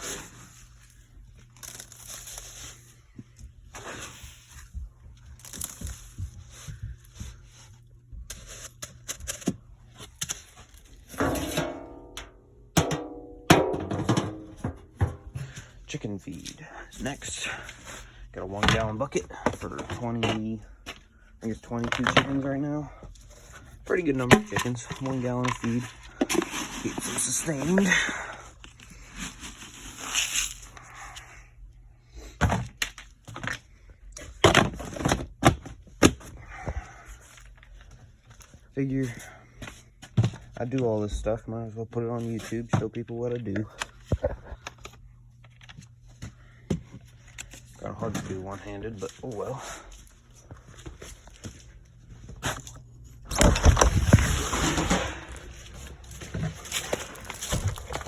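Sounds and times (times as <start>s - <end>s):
plastic bucket knocking: 12.8s - 15.4s.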